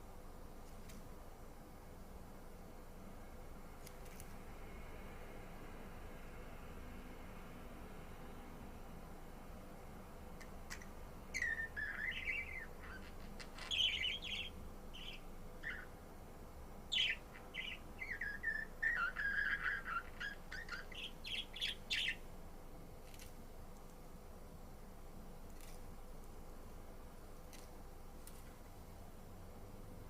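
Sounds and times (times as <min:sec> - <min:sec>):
budgerigar chirping and warbling: 0:10.7 - 0:15.9, 0:16.9 - 0:22.2.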